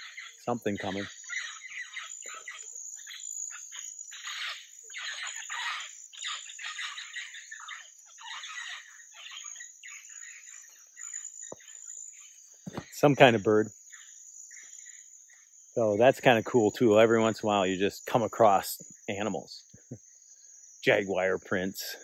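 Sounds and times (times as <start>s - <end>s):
bird calling harsh notes: 0.0s - 14.1s
insects droning: 0.0s - 22.0s.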